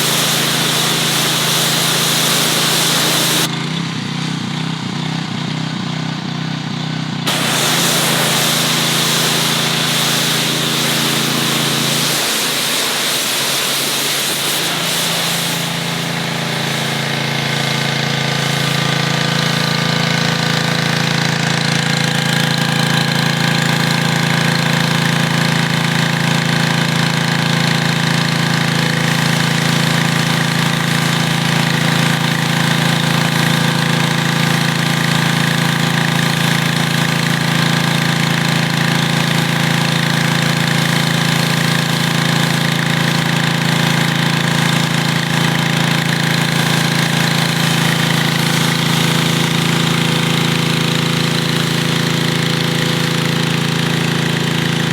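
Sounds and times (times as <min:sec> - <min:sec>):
high-pressure spray hissing: 0:00.0 - 0:03.5, 0:07.3 - 0:20.8, 0:29.0 - 0:36.6, 0:46.2 - 0:50.2
pressure washer engine humming: 0:00.0 - 0:54.9.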